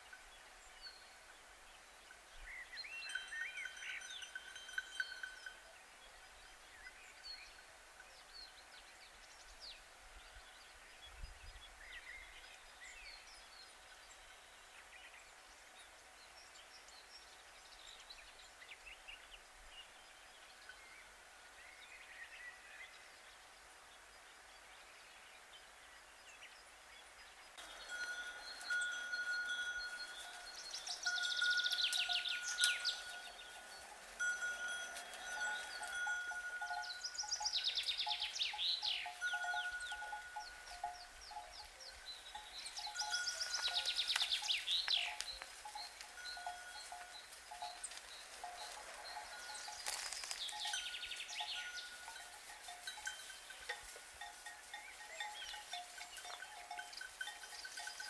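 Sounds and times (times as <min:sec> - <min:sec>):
cowbells ringing: 0:02.0 - 0:05.8, 0:27.6 - 0:58.0
bird chirps: 0:02.4 - 0:07.6, 0:27.3 - 0:53.8
birds calling rapidly: 0:27.6 - 0:33.8, 0:34.6 - 0:58.0.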